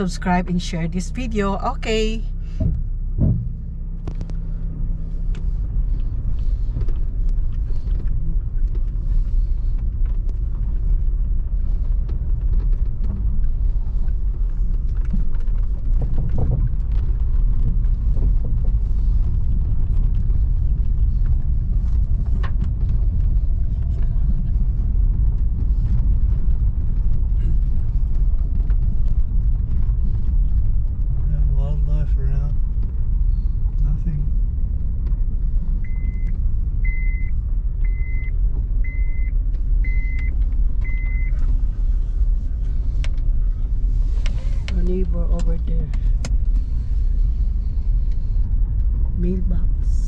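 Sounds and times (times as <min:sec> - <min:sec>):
car driving on road: 0:00.0 - 0:50.0.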